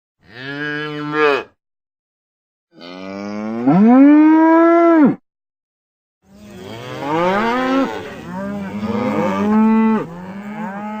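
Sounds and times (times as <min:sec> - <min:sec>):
cows mooing: 0:00.2 - 0:01.5, 0:02.8 - 0:05.2, 0:06.4 - 0:11.0.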